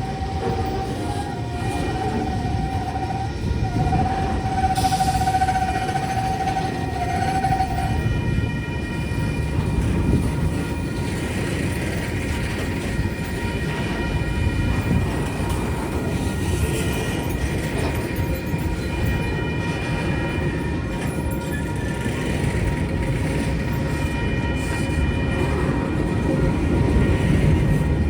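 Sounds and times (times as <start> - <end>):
train horn blast: 0.0 - 10.5, 12.8 - 16.6, 23.2 - 28.0
train rumbling by: 0.0 - 28.0.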